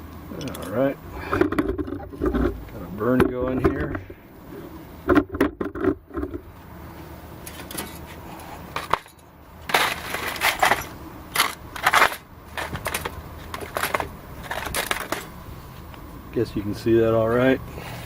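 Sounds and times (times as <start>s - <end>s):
crackling scrapes of kindling: 7.4s - 15.4s.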